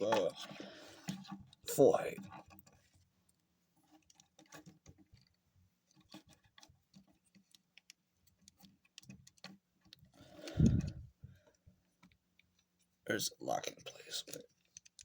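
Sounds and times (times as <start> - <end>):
plastic parts clicking: 3.9 - 12.7, 14.2 - 15.0.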